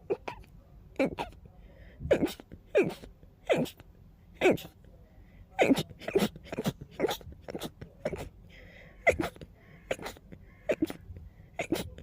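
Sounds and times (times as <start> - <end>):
person sneezing: 0.0 - 1.4, 2.0 - 3.8, 4.4 - 4.8, 5.6 - 8.4, 9.0 - 11.0, 11.6 - 12.0
quick catching breaths: 4.5 - 12.0.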